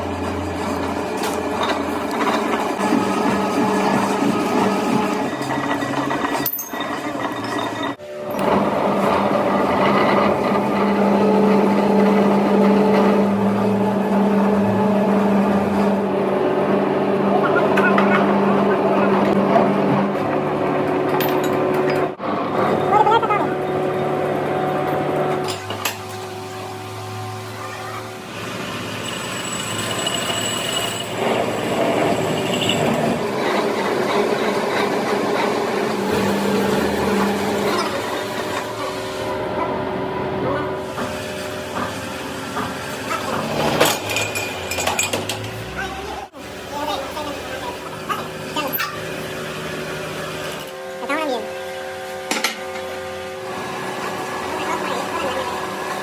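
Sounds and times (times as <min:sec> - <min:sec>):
workshop machine humming and whirring: 0:00.0 - 0:56.0
metal lathe with ringing tones: 0:00.1 - 0:16.2, 0:28.3 - 0:39.4.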